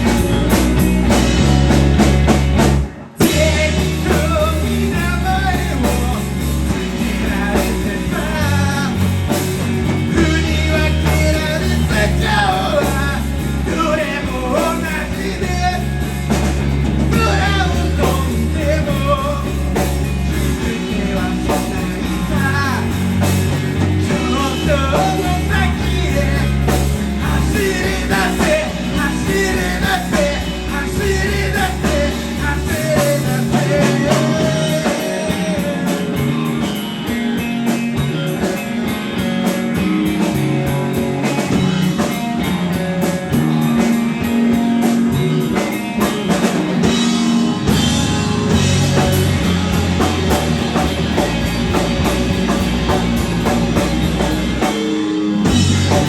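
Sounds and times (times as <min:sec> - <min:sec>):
rock band playing: 0:00.0 - 0:56.0
person singing: 0:03.0 - 0:36.9.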